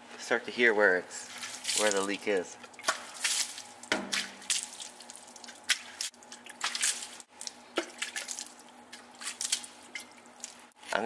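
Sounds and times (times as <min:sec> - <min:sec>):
water splashing off a tire: 0:01.3 - 0:02.2, 0:02.8 - 0:08.6.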